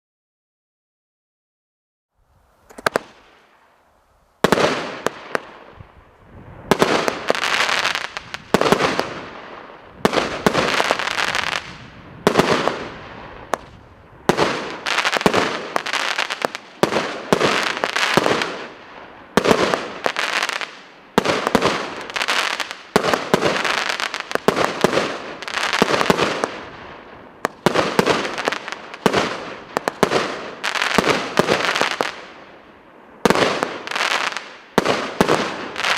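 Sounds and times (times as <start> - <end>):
firework shells crackling: 2.7 - 3.2.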